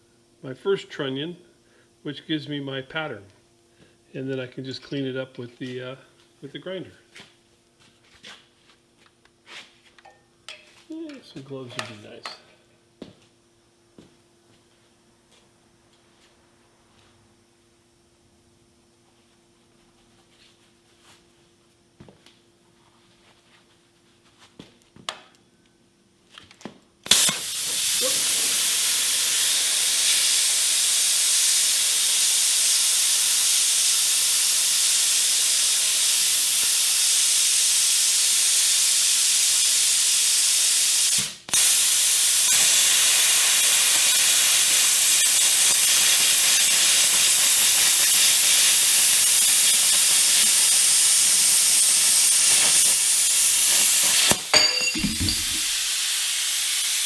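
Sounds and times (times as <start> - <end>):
plasma torch hissing: 27.1 - 54.6, 55.2 - 57.0.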